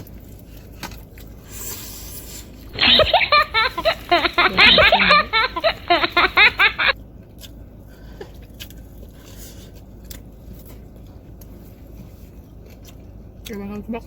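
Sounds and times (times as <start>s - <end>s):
person laughing: 2.7s - 7.0s.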